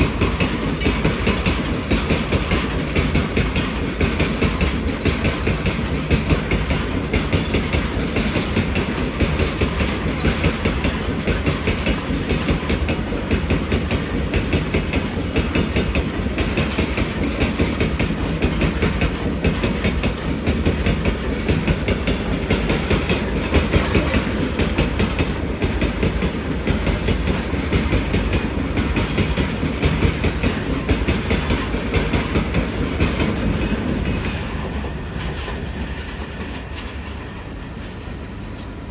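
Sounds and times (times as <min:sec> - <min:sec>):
train wheels clattering over rails: 0:00.0 - 0:38.9.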